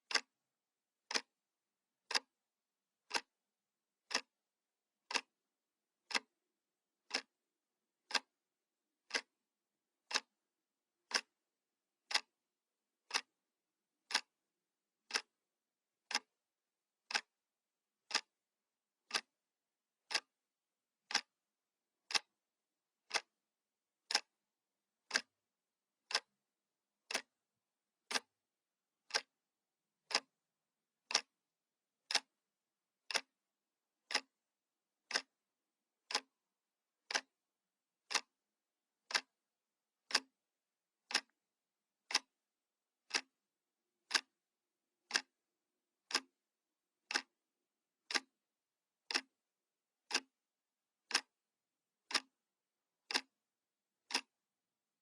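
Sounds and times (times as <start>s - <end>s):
analog clock ticking: 3.1s - 3.3s, 5.1s - 5.3s, 6.1s - 6.3s, 7.1s - 7.3s, 9.1s - 9.3s, 11.1s - 11.3s, 14.1s - 14.3s, 16.1s - 16.3s, 17.1s - 17.3s, 18.1s - 18.3s, 19.1s - 19.3s, 20.1s - 20.3s, 21.1s - 21.3s, 22.1s - 22.3s, 23.1s - 23.3s, 24.1s - 24.3s, 25.1s - 25.3s, 26.1s - 26.3s, 28.1s - 28.3s, 29.1s - 29.3s, 30.1s - 30.3s, 31.1s - 31.3s, 32.1s - 32.3s, 33.1s - 33.3s, 34.1s - 34.3s, 35.1s - 35.3s, 36.1s - 36.3s, 37.1s - 37.3s, 38.1s - 38.3s, 39.1s - 39.3s, 40.1s - 40.3s, 41.1s - 41.3s, 42.1s - 42.3s, 43.1s - 43.3s, 44.1s - 44.3s, 45.1s - 45.3s, 47.1s - 47.3s, 48.1s - 48.3s, 49.1s - 49.3s, 50.1s - 50.3s, 51.1s - 51.3s, 52.1s - 52.3s, 53.1s - 53.3s, 54.1s - 54.3s.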